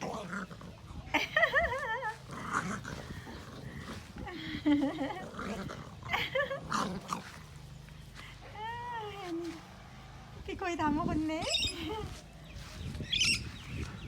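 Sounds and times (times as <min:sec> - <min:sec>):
puppy growling: 0:00.0 - 0:07.6.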